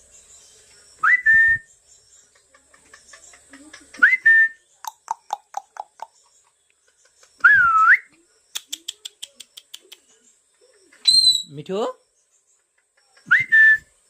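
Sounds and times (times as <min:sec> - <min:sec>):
parrot whistling: 0:11.1 - 0:11.5.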